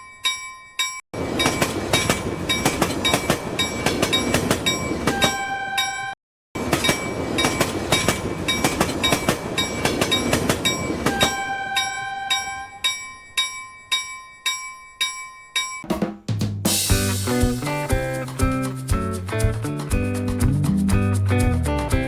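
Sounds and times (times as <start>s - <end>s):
electronic bell dinging: 0.0s - 6.2s, 6.8s - 15.9s.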